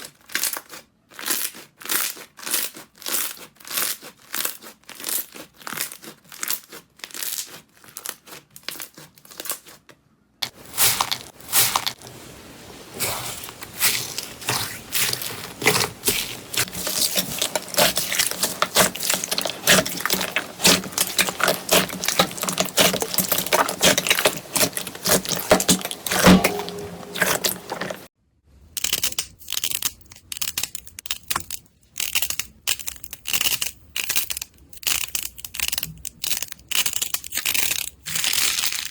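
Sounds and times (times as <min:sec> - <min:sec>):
slime crackling and popping: 0:13.0 - 0:27.8, 0:28.8 - 0:38.9.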